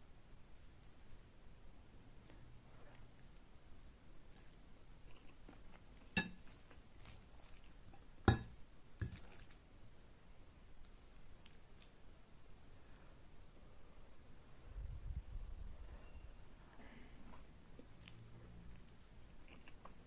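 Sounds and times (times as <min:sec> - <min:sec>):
faint chewing: 0:00.7 - 0:01.3, 0:02.1 - 0:08.2, 0:08.8 - 0:09.7, 0:10.7 - 0:12.2, 0:16.7 - 0:20.0.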